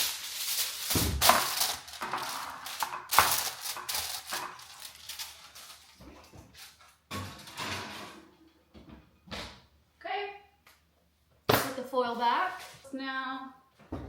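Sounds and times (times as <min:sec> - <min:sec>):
aluminum foil crinkling: 0:00.0 - 0:07.0.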